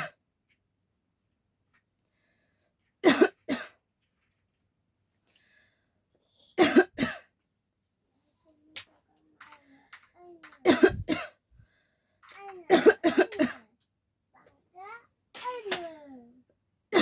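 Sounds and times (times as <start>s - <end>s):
person coughing: 6.6s - 7.2s, 10.7s - 11.4s, 12.7s - 13.7s.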